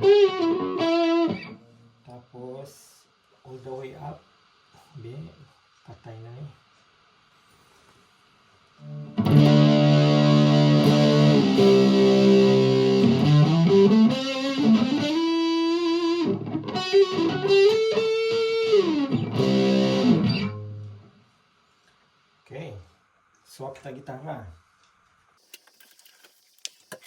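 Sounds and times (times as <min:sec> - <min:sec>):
distorted electric guitar: 0:00.0 - 0:01.7, 0:08.8 - 0:21.2.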